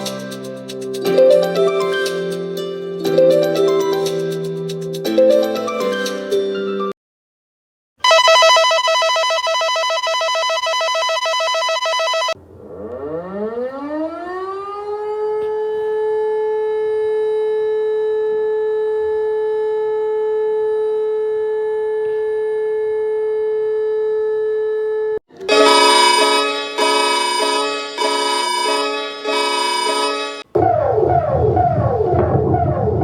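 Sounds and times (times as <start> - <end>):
pulsing electronic alarm tone: 8.0 - 15.3, 25.5 - 33.0
siren winding up: 8.0 - 22.0, 25.4 - 33.0.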